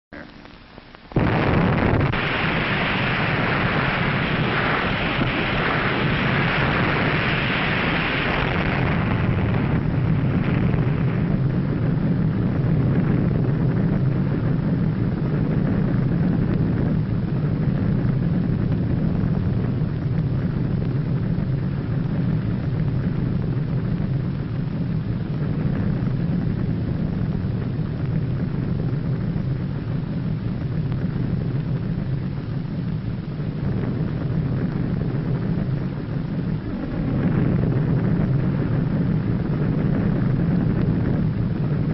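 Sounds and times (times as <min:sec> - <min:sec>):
deep rumble: 0:00.1 - 0:41.9
explosion rushing rumble: 0:01.1 - 0:41.9
hiss: 0:02.1 - 0:10.0.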